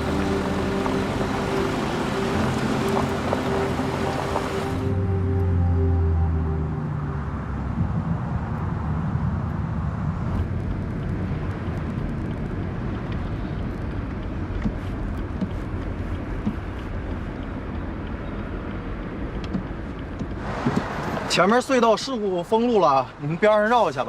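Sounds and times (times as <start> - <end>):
background music: 0.0 - 8.0
road traffic rumble: 0.0 - 24.0.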